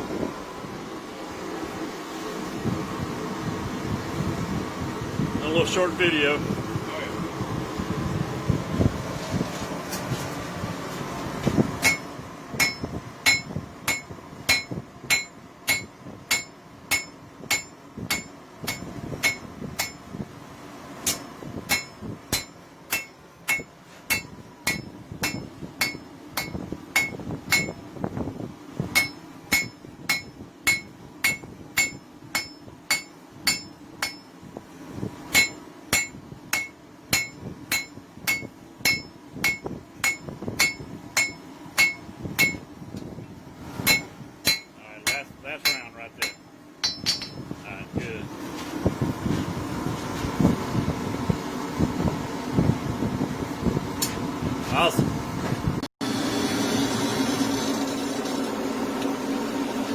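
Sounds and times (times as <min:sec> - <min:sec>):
hammer striking metal on anvil: 0:11.8 - 0:20.0, 0:21.0 - 0:27.8, 0:28.9 - 0:34.3, 0:35.3 - 0:42.7, 0:43.8 - 0:47.5.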